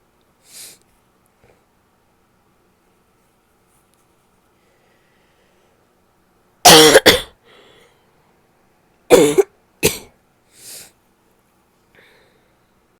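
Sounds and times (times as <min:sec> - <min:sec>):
faint breaths: 0:04.4 - 0:06.0, 0:07.4 - 0:08.4, 0:11.9 - 0:12.9
person coughing: 0:06.7 - 0:07.4, 0:09.1 - 0:10.1.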